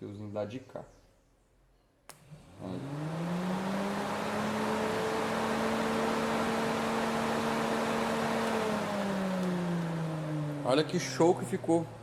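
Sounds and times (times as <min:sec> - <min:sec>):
radiator cooling fan running: 0:02.4 - 0:12.0.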